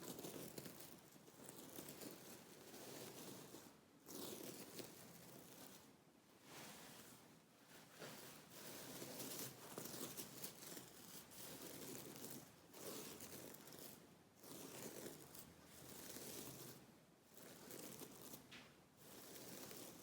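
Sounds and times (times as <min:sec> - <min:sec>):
fingernails scratching: 0:19.1 - 0:20.0.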